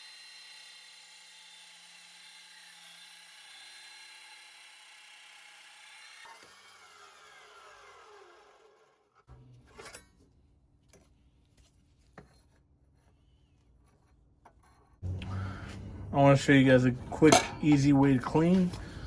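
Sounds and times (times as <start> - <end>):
saw motor spinning down: 0.0 - 9.1.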